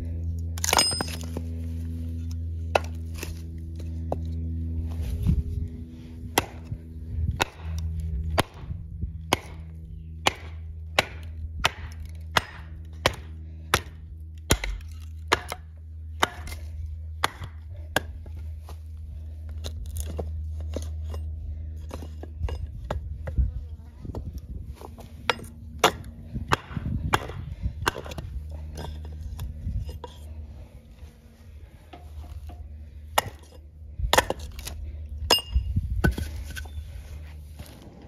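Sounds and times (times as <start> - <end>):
steady low hum: 0.0 - 38.0
sharp chopping blows: 7.3 - 15.6.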